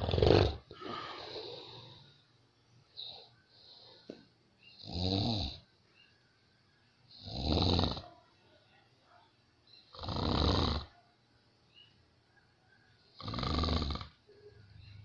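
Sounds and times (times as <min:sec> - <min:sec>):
person snoring loudly: 0:00.0 - 0:01.9, 0:04.8 - 0:05.6, 0:07.2 - 0:08.0, 0:10.0 - 0:10.9, 0:13.2 - 0:14.2.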